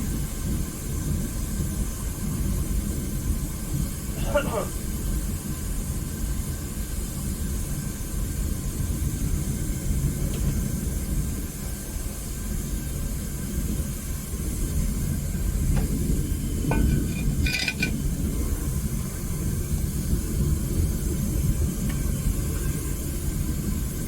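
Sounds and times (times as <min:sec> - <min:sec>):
propane burner rushing: 0:00.0 - 0:24.0
light metallic clinks: 0:16.7 - 0:18.0.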